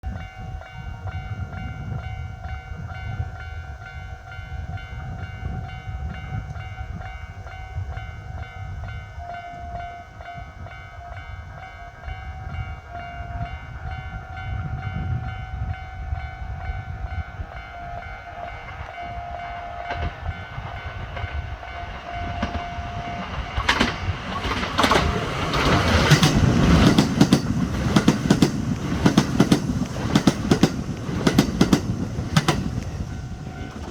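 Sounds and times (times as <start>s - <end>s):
level crossing alarm ringing: 16.0s - 33.9s
train wheels clattering over rail joints: 22.4s - 33.9s.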